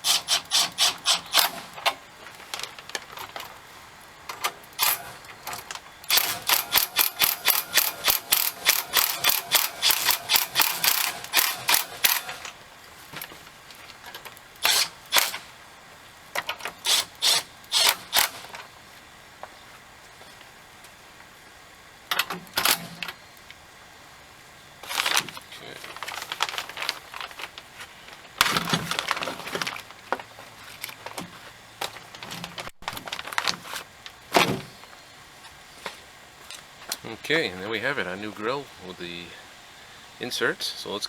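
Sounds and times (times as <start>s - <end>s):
rapid ratcheting clicks: 0.0s - 1.6s, 4.8s - 12.6s, 16.4s - 18.5s.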